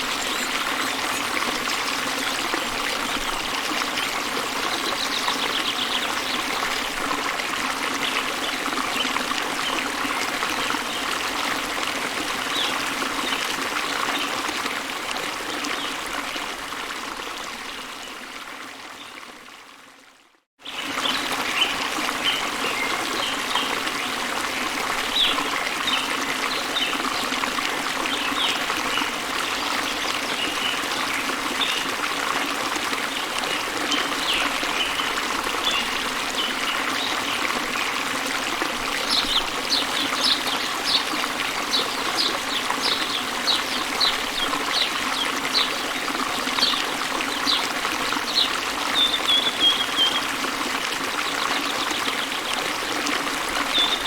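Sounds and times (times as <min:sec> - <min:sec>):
songbirds chirping: 0:00.0 - 0:01.7
waterfall rushing: 0:34.1 - 0:50.4.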